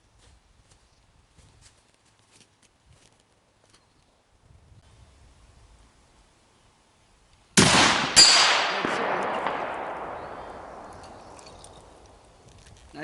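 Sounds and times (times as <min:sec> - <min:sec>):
rifle shot cracks: 0:07.6 - 0:12.3
rolling echo: 0:07.6 - 0:12.6.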